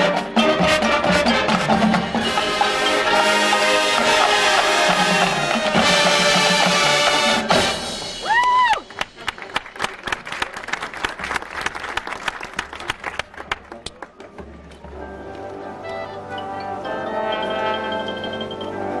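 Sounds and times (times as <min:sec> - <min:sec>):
marching band brass and drums: 0:00.0 - 0:10.4, 0:11.2 - 0:19.0
wood-block hits: 0:17.2 - 0:19.0.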